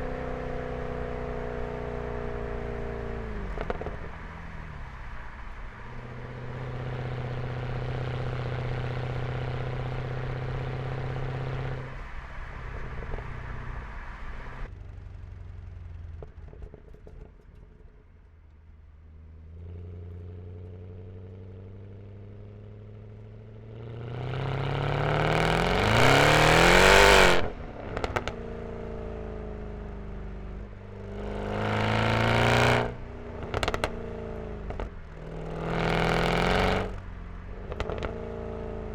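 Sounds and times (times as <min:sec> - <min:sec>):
car engine accelerating hard: 0:19.2 - 0:38.9.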